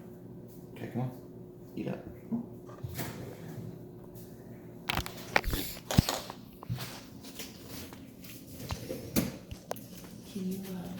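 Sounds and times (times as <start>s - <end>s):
child chewing crunchy cereal: 4.9s - 10.2s.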